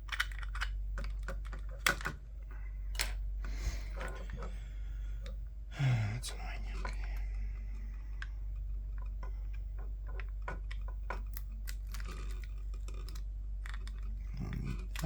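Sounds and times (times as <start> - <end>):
plastic headset parts clicking: 0.0 - 2.2, 2.9 - 4.5, 9.0 - 15.0
steady low hum: 0.0 - 15.0.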